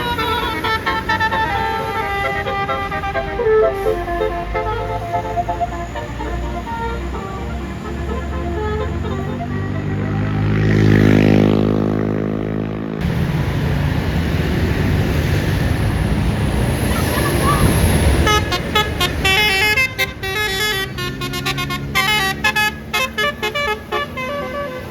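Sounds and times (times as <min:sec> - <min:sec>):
musical horn melody: 0:00.0 - 0:11.6, 0:17.6 - 0:24.9
bus engine drone: 0:00.0 - 0:24.9
road noise: 0:00.0 - 0:24.9.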